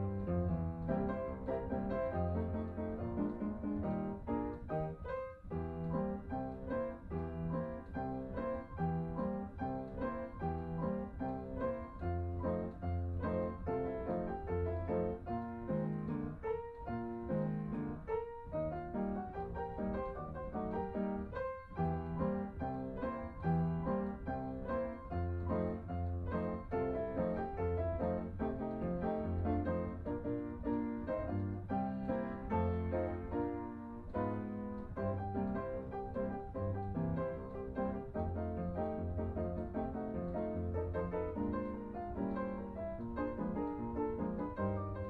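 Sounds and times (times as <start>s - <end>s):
piano music: 0.0s - 45.0s.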